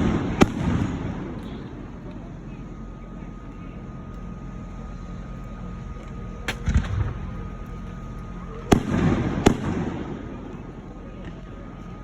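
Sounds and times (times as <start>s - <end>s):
fireworks sharp bangs: 0.0s - 1.4s, 6.5s - 7.4s, 8.6s - 10.4s
fireworks crackling: 6.4s - 11.6s.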